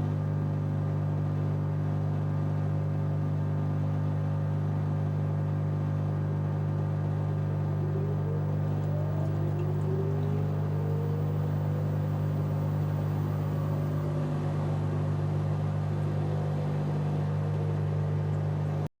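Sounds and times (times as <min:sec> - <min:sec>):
washing machine humming: 0:00.0 - 0:18.9
faint rising whines: 0:04.7 - 0:16.4.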